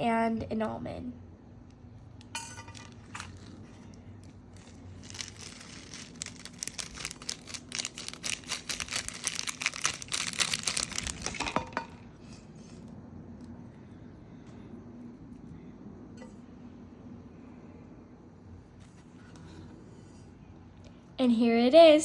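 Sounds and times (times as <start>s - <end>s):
plastic bag crinkling: 2.7s - 12.0s.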